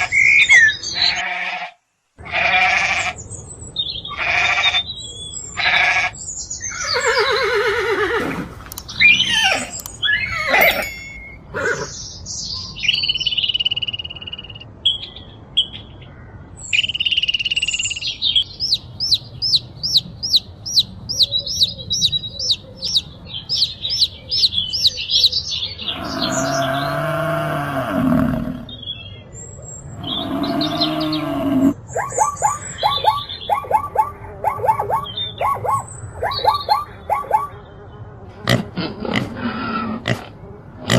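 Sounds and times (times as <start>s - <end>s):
falling pitched animal calls: 6.7s - 10.9s
deep animal calls: 25.8s - 28.8s, 29.9s - 31.8s.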